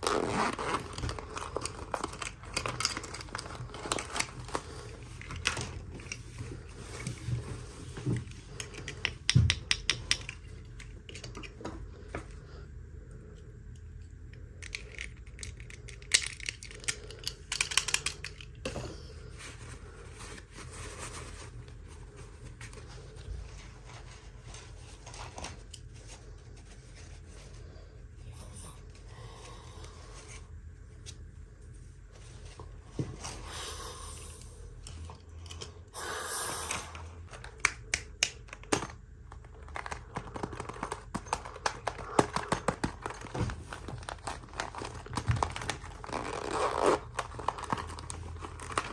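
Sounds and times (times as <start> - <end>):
plastic packaging crinkling and tearing: 0.0 - 7.0, 38.4 - 48.9
small plastic pieces clicking: 14.6 - 18.6.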